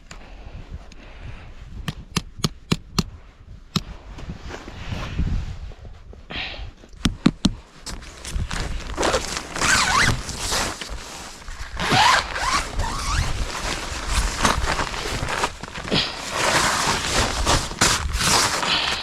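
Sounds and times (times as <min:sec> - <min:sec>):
zipper being pulled: 0:08.8 - 0:19.0.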